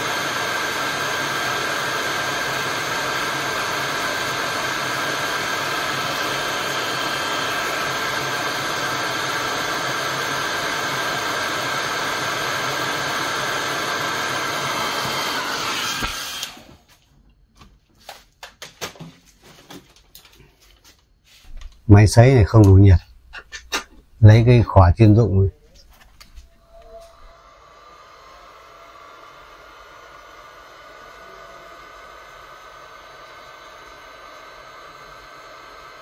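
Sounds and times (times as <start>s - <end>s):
hair dryer running: 0.0s - 17.0s, 25.3s - 36.0s.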